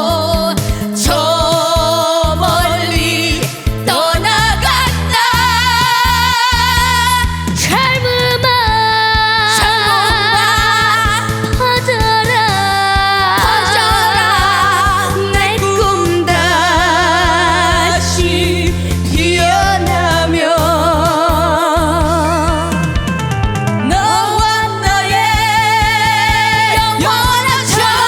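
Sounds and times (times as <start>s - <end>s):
women singing with vibrato: 0.0s - 23.0s, 23.8s - 28.0s
band playing a steady beat: 9.0s - 27.9s.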